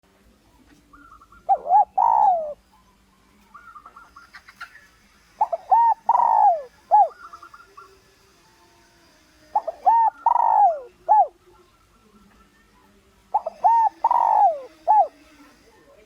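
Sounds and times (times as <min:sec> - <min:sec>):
dove cooing: 0:00.9 - 0:02.7, 0:05.4 - 0:07.9, 0:09.5 - 0:11.7, 0:13.3 - 0:15.7.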